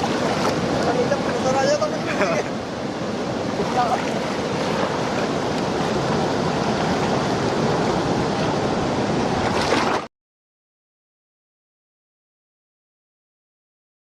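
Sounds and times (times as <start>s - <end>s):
rushing floodwater: 0.0s - 10.1s.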